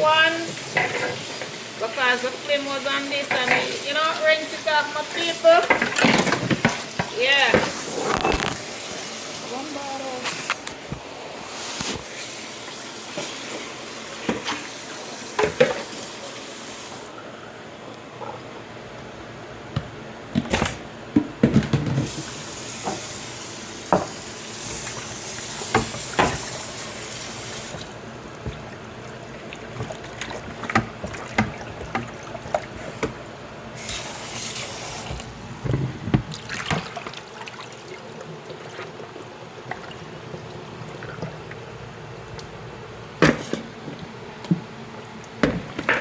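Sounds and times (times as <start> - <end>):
tap water running: 0.0 - 17.3, 21.8 - 46.0.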